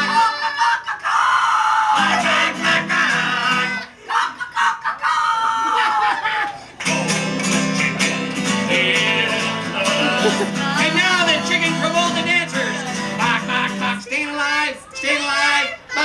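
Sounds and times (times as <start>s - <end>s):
acoustic guitar: 0.0s - 0.4s, 1.9s - 4.0s, 6.6s - 15.2s.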